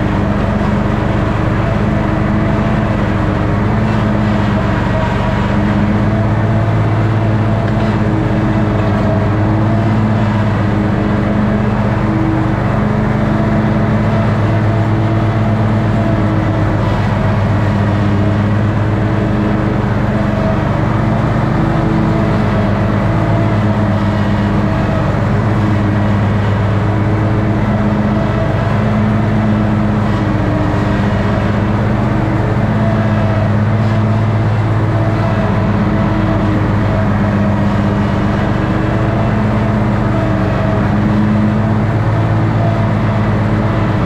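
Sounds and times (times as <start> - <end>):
riding mower engine running: 0.0 - 44.0.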